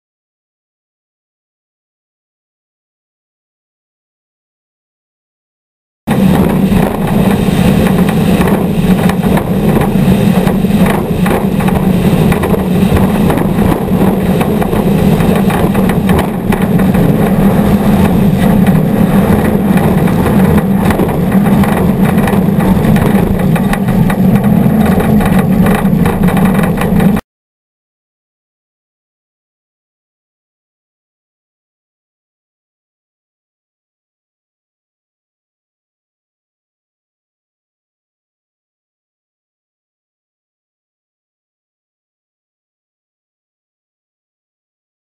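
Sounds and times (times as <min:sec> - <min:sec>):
truck engine running loud: 0:06.1 - 0:27.2.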